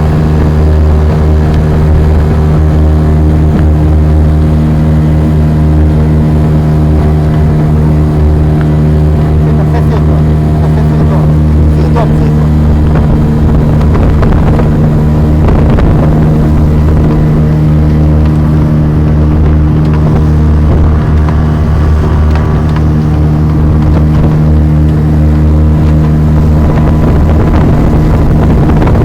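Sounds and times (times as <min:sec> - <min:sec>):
motorboat engine droning: 0:00.0 - 0:29.0.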